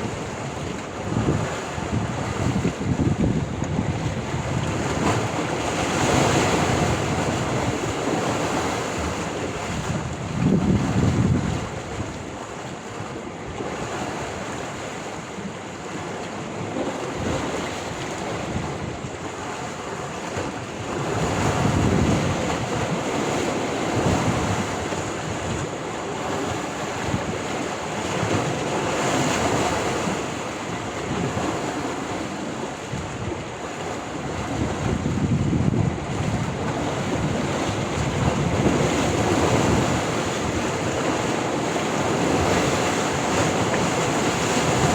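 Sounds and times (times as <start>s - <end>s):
wind gusting on microphone: 0.0s - 12.4s, 17.1s - 30.2s, 30.8s - 44.9s
sea waves breaking on shore: 0.0s - 44.9s.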